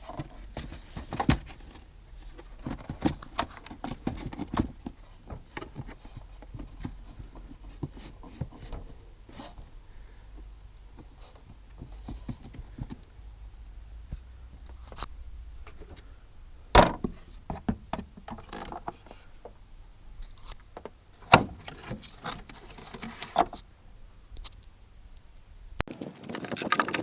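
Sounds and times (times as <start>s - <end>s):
hard objects knocking and clicking: 25.9s - 27.0s.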